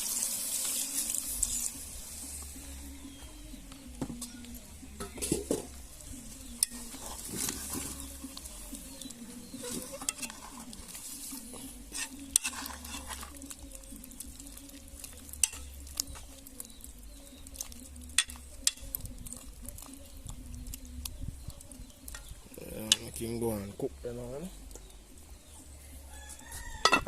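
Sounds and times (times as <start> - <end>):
spoon scraping a pot: 6.4 - 20.4.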